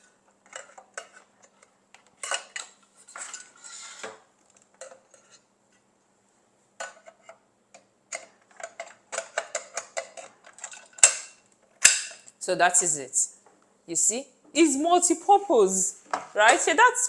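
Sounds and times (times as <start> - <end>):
cooking plates clattering and clicking: 0.0 - 5.5, 6.8 - 12.3
short scrape: 3.6 - 4.1.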